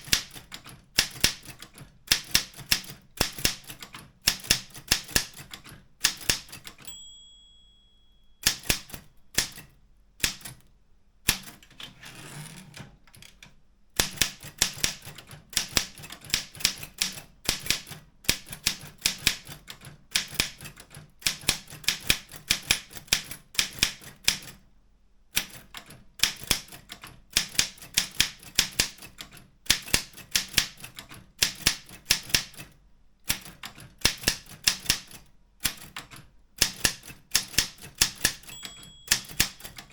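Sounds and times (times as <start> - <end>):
typewriter keys typing: 0.0 - 7.0, 8.4 - 10.6, 11.3 - 24.6, 25.4 - 39.9
steady high tone: 6.9 - 8.4.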